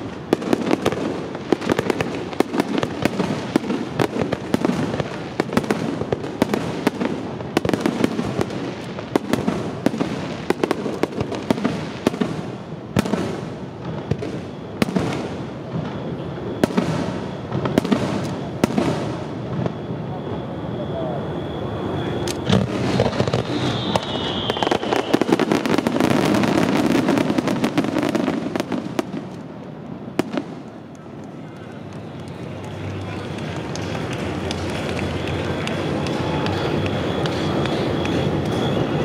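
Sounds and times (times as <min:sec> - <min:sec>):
fireworks bursting: 0:00.0 - 0:20.4, 0:21.8 - 0:39.0
continuous rumble: 0:00.0 - 0:39.0.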